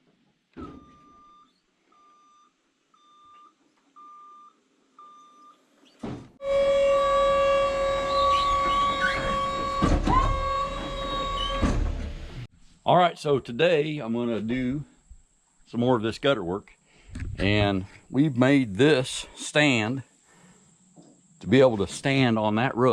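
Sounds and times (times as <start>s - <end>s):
loud steady fixed-pitch tone: 6.4s - 12.1s.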